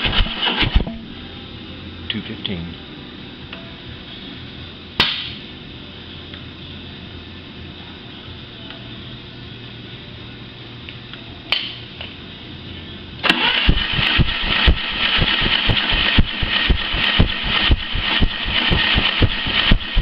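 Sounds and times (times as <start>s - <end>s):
engine cranking on starter: 0.0s - 0.9s, 13.2s - 20.0s.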